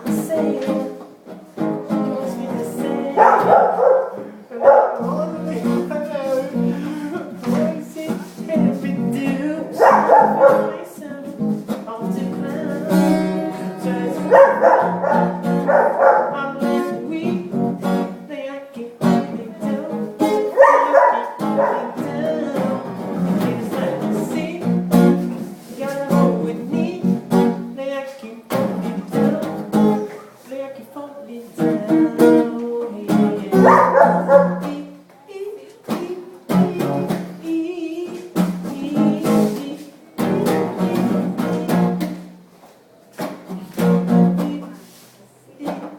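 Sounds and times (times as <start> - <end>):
strummed guitar music: 0.0 - 30.4, 31.4 - 45.0
dog barking: 3.0 - 5.2, 9.7 - 10.9, 13.8 - 16.6, 20.5 - 22.8, 33.6 - 34.7.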